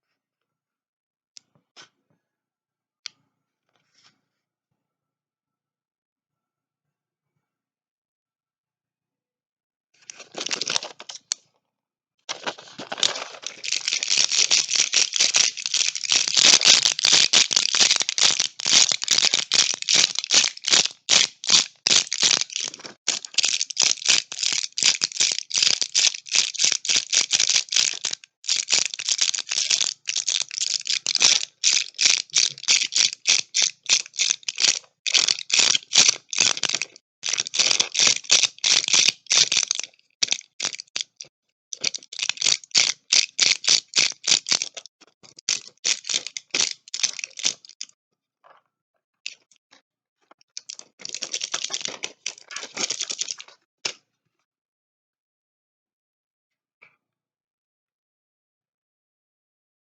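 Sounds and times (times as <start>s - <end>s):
packaging crackling clicks: 10.1s - 11.4s, 12.3s - 47.8s, 50.6s - 54.0s.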